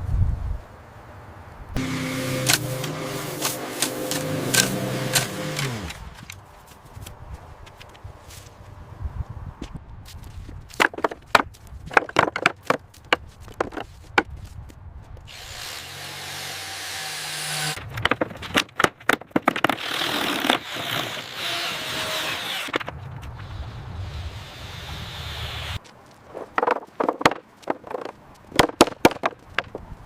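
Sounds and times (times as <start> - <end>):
low hum: 1.8 - 6.3
power tool running: 1.8 - 6.3, 15.3 - 17.8, 19.8 - 22.7.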